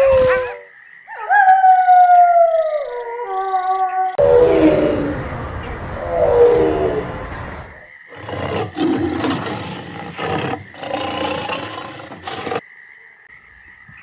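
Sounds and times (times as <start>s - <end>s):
big cat roaring: 4.2s - 12.6s.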